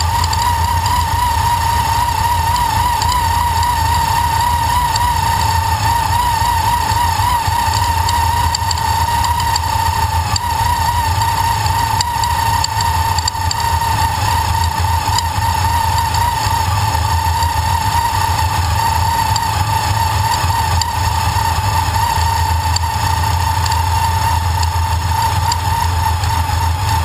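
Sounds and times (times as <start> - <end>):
faint irregular ticking: 0.0 - 27.0
supercharged engine idling: 0.0 - 27.0
supercharger whine: 0.0 - 27.0.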